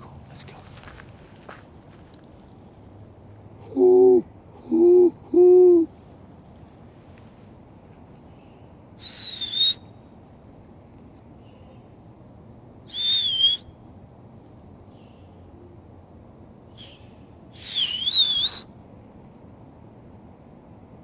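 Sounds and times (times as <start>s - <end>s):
person whistling: 9.0s - 9.8s, 12.9s - 13.6s, 17.6s - 18.6s.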